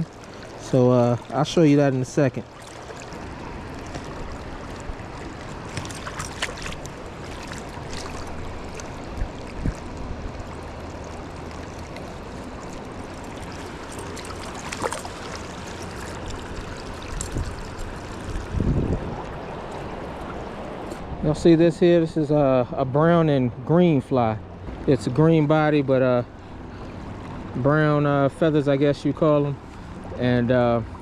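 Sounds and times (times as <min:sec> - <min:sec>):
river water rushing: 0:00.0 - 0:21.2.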